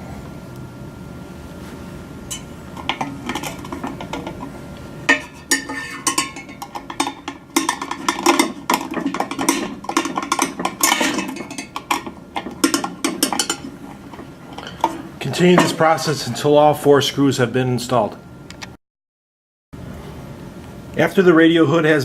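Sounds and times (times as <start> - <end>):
metal clicking and clattering: 2.3 - 16.4.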